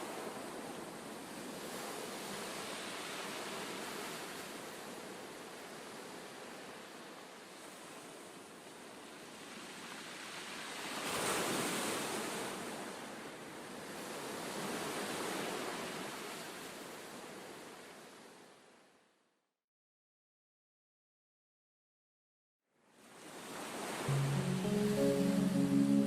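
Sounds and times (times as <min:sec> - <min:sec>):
ocean waves washing in: 0:23.0 - 0:26.0.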